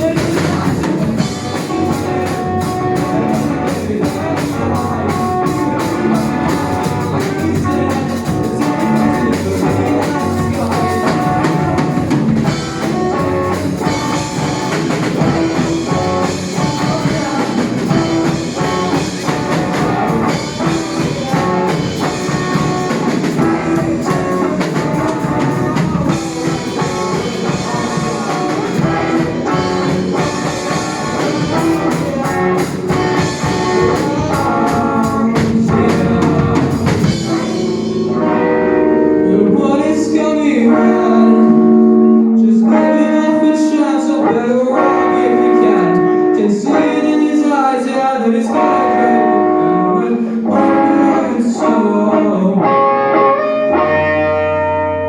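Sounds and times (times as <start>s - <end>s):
drum kit with cymbal hits: 0.0s - 38.5s
bass guitar: 0.0s - 47.7s, 48.3s - 55.0s
electric guitar: 0.0s - 55.0s.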